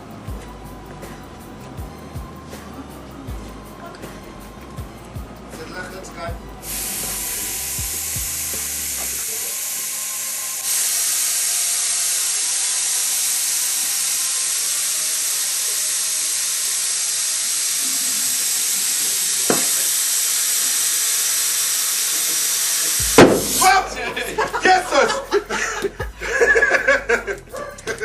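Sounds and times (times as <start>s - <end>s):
air hissing through tyre valve: 0.0s - 27.3s.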